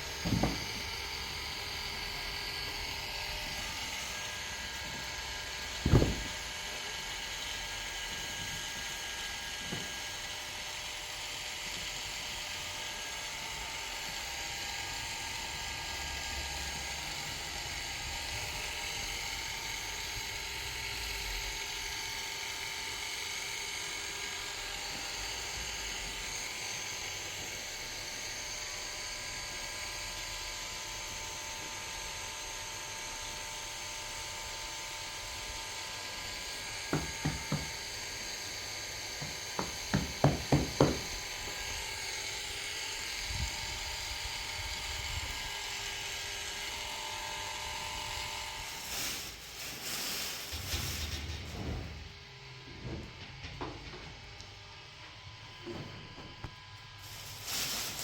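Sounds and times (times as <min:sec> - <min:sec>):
mechanical whir with hiss: 0:47.0 - 0:53.1, 0:56.4 - 0:58.0.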